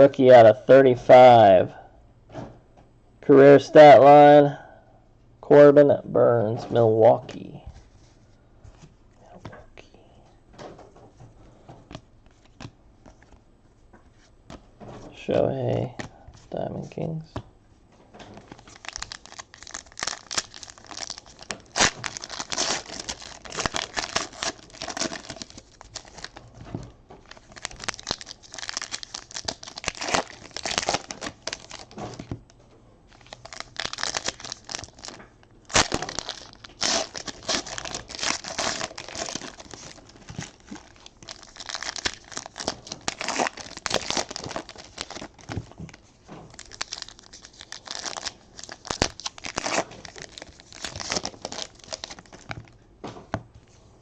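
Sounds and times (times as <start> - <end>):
wrappers crinkling and tearing: 18.4 - 26.6, 27.2 - 32.3, 33.1 - 52.8.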